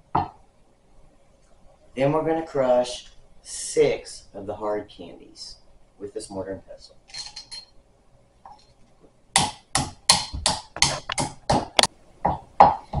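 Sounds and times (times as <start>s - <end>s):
pestle pounding candy in mortar: 9.4s - 13.0s.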